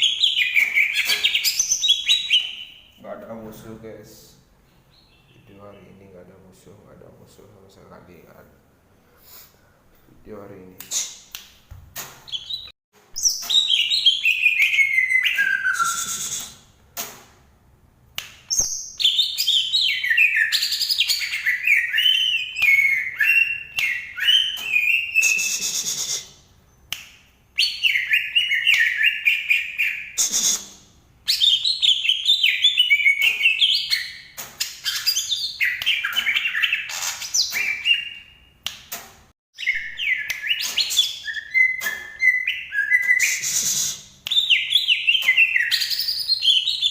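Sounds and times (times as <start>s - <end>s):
bird warbling with chirps and whistles: 0.0s - 3.1s, 31.3s - 38.4s, 39.6s - 46.9s.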